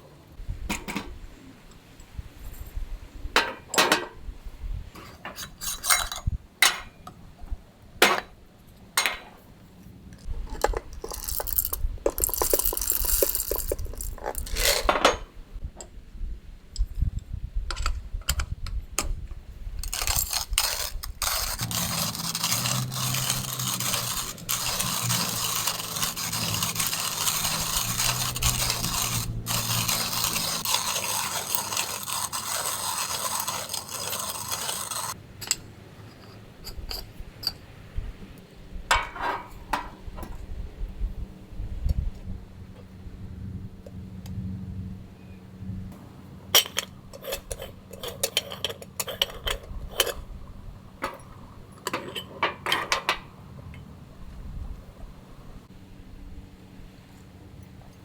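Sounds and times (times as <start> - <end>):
metal cookware clinking: 5.3 - 7.0, 9.0 - 9.4.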